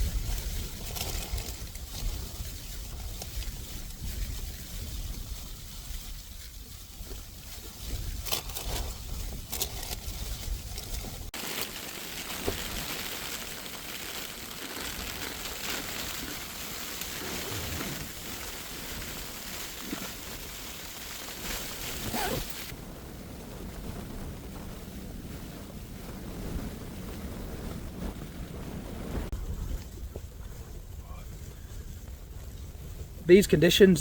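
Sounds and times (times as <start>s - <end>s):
wind blowing against tent: 0.0s - 34.0s
tent fabric snapping: 21.4s - 22.7s.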